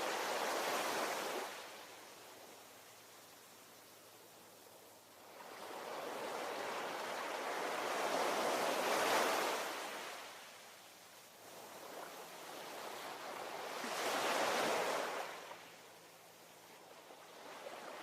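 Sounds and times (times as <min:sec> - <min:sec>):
ocean waves crashing on shore: 0:00.0 - 0:01.9, 0:05.3 - 0:10.5, 0:11.6 - 0:15.6.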